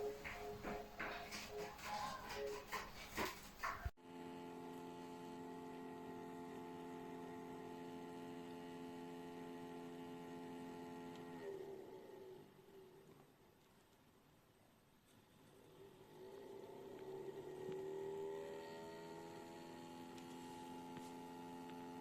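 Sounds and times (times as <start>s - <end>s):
humidifier electrical hum: 4.0s - 13.0s.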